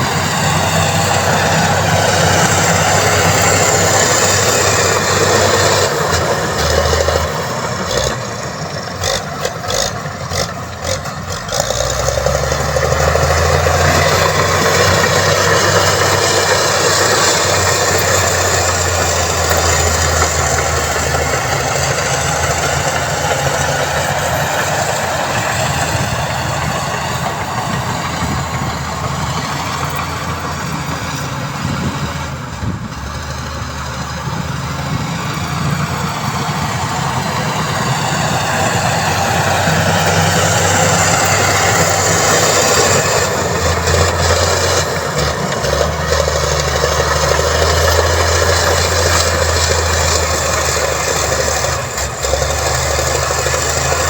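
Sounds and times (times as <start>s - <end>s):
construction machine engine running: 0.0s - 54.0s.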